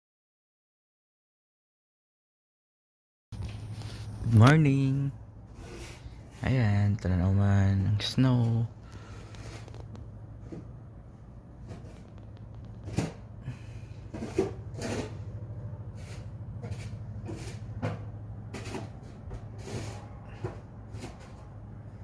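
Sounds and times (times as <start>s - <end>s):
steady low hum: 3.4s - 22.0s
knocks and rustles: 9.2s - 13.4s, 16.0s - 21.6s.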